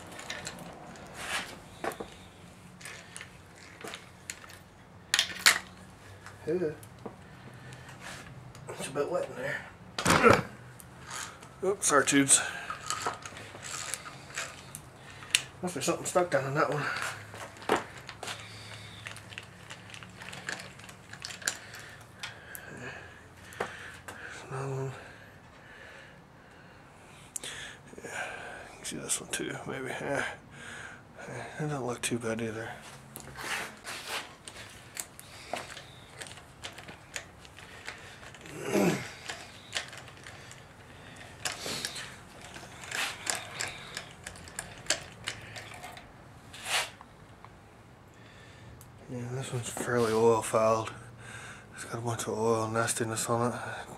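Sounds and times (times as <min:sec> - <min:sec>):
hand tools clicking and tapping: 0:34.4 - 0:46.1
metal scrape: 0:46.5 - 0:47.0.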